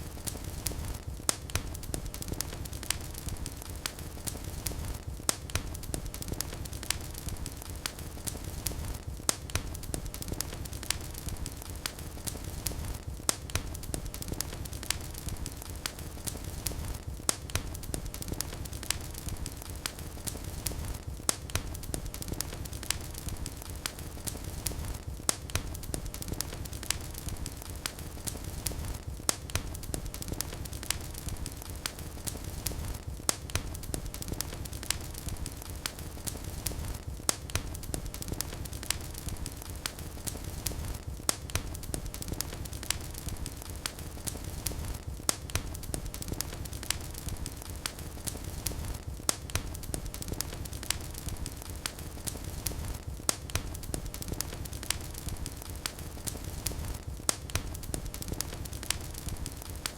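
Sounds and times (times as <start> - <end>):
wood fire crackling: 0.0 - 59.9
low rumble of flames: 0.1 - 59.9.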